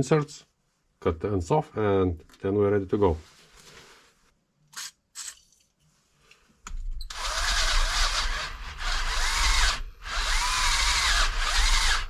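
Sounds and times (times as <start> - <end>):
electric power drill boring metal: 7.1 - 12.0.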